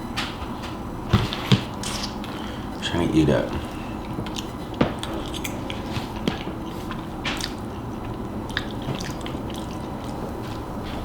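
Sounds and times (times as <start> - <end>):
wet chewing and mouth smacks: 4.0 - 11.0.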